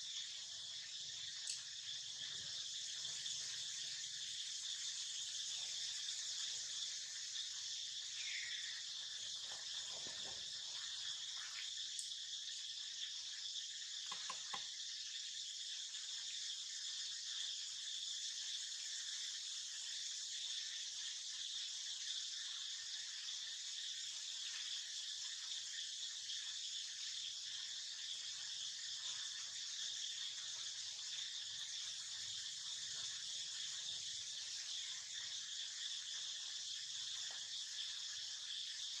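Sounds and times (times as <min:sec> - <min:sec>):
insect chorus buzzing trill: 0:00.0 - 0:39.0
faint clicks: 0:01.4 - 0:01.6.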